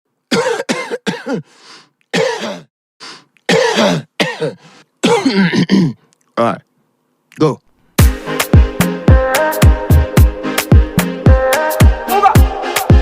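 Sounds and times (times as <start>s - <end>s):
person coughing: 0.3s - 1.5s, 2.1s - 2.7s, 3.4s - 6.1s.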